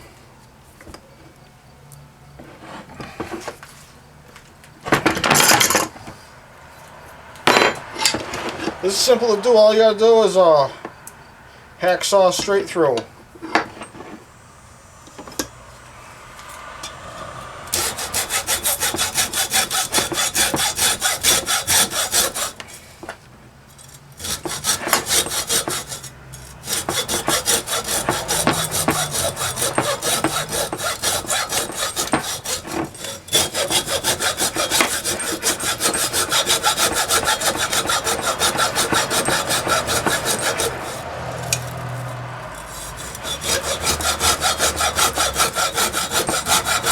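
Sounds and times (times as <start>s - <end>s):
hacksaw cutting metal: 4.9s - 5.9s, 7.4s - 9.2s, 17.7s - 22.7s, 23.8s - 46.9s.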